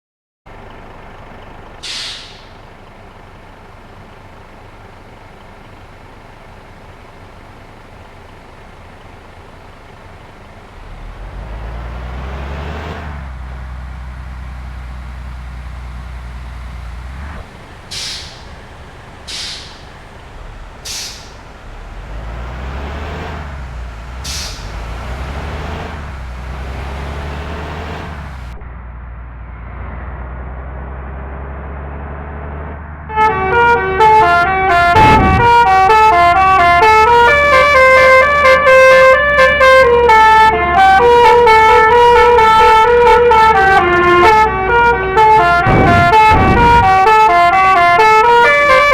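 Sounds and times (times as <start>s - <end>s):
bus engine running: 0.5s - 48.9s
deep drone: 0.6s - 48.0s
compressed air hisses: 1.8s - 2.5s, 17.9s - 18.6s, 19.3s - 20.0s, 20.8s - 21.5s, 24.2s - 24.8s.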